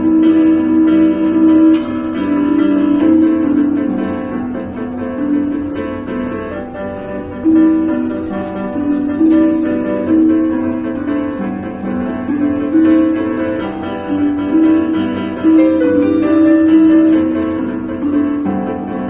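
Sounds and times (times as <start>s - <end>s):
piano playing held notes: 0.0s - 19.0s.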